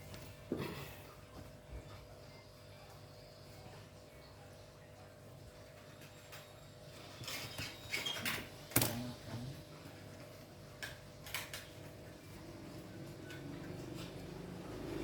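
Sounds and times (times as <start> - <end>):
small tools clicking and tapping: 10.8 - 11.9.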